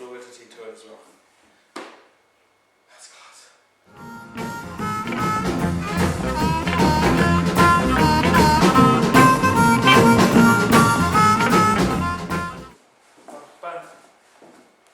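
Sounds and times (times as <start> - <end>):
blues music with steady beat: 3.9 - 12.8.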